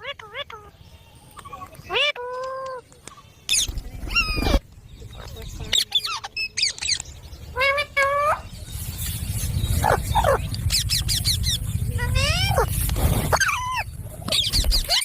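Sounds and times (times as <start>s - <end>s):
parakeet squawking: 5.6s - 15.0s.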